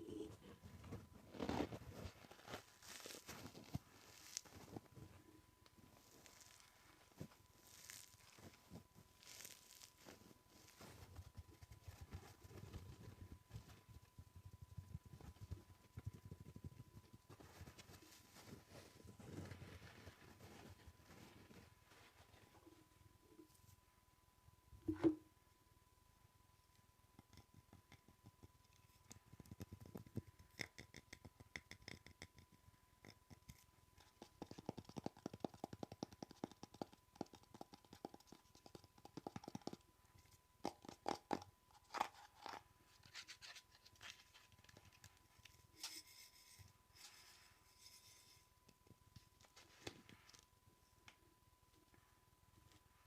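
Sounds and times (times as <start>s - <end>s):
scratching on objects: 0.1s - 5.2s, 5.8s - 22.6s, 34.0s - 48.5s.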